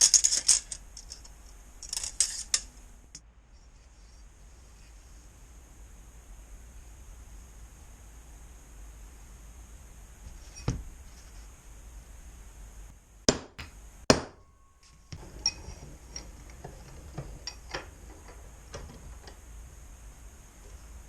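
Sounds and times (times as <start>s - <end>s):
loud metal strikes: 13.3s - 15.2s.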